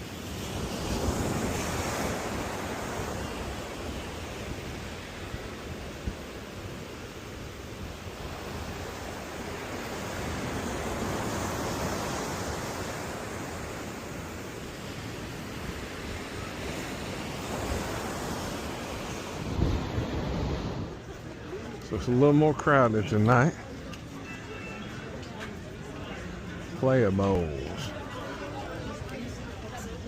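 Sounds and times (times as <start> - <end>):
surf rushing: 0.0 - 21.4
wind: 0.0 - 30.0.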